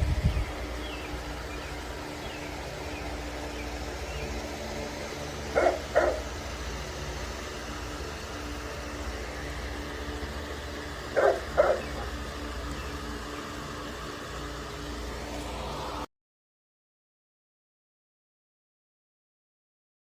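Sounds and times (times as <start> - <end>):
steady low hum: 0.0 - 16.1
dog barking: 5.5 - 6.3, 11.1 - 12.2.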